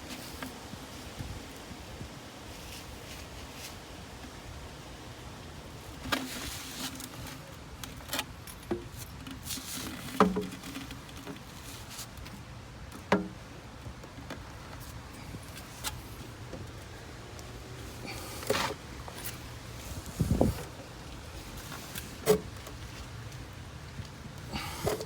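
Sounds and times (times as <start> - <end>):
tools and plastic pipe clicking: 6.1 - 11.5, 24.6 - 25.0.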